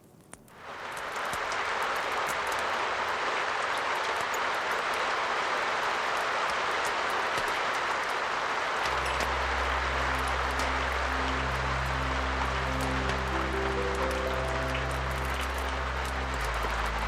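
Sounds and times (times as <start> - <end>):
wood fire crackling: 0.0 - 17.0
heavy rain falling: 0.5 - 17.0
ambient music drone: 8.8 - 17.0.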